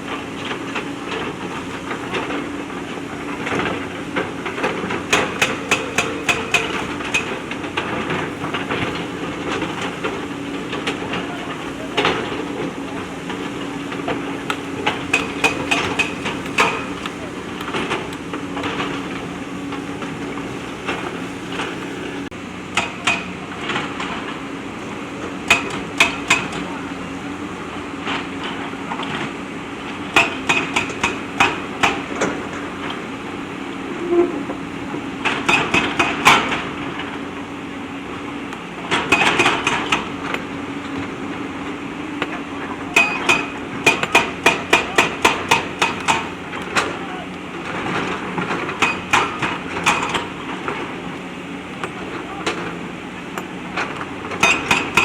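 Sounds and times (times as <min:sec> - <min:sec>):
backhoe engine running: 0:00.0 - 0:55.0
metallic clanks and knocks: 0:03.4 - 0:24.4, 0:25.4 - 0:26.7, 0:42.9 - 0:52.8, 0:53.4 - 0:55.0.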